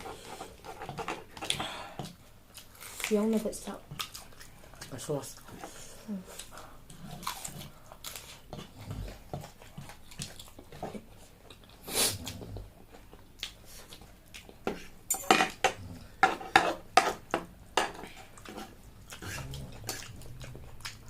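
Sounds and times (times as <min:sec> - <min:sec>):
utensils clinking against dishes: 0:15.1 - 0:17.2.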